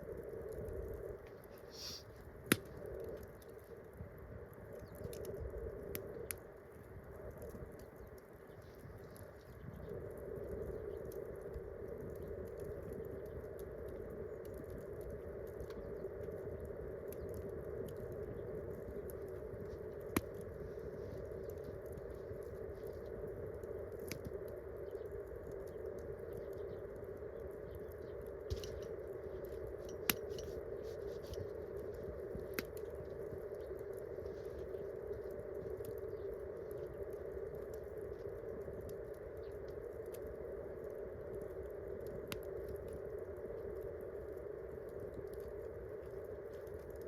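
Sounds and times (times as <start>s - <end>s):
campfire crackling: 0.0s - 47.0s
sharp fire pops: 1.6s - 3.5s, 29.8s - 30.5s.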